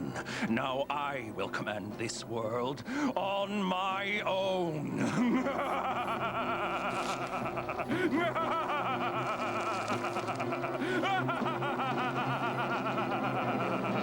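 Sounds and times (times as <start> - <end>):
dramatic background music: 0.0 - 14.0
man cackling laugh: 4.9 - 14.0.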